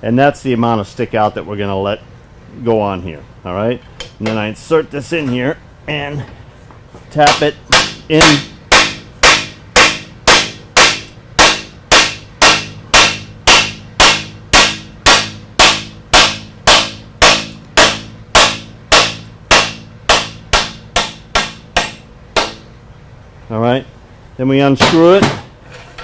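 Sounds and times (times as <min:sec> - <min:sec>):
hammer blows with metallic ring: 0:07.2 - 0:22.7.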